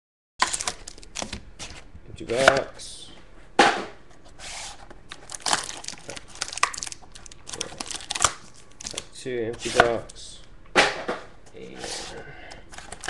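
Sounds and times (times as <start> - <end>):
cardboard and packaging crinkling: 0.4 - 1.8, 4.7 - 9.1, 12.7 - 13.0.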